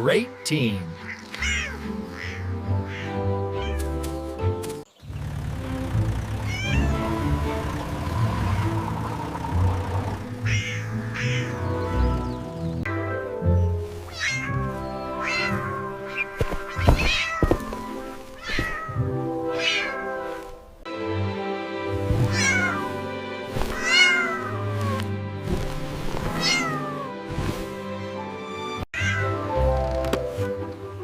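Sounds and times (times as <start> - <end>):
background music: 0.0 - 31.0
cat meowing: 1.0 - 4.0, 6.5 - 7.0, 10.4 - 11.8, 14.1 - 20.2, 22.2 - 23.0, 23.7 - 25.1, 26.3 - 27.2, 29.0 - 29.5.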